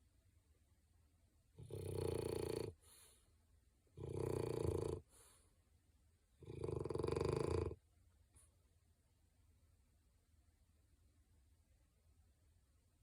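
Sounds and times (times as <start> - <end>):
dog snoring: 1.6 - 3.0, 4.0 - 5.2, 6.4 - 7.8
soft dog breath: 2.7 - 3.4, 5.0 - 5.6.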